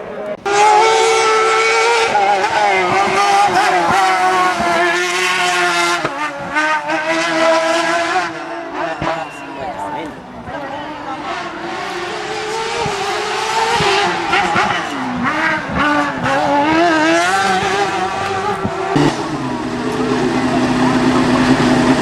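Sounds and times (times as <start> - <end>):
race car engine revving: 0.0 - 22.0
steady engine note: 10.4 - 22.0.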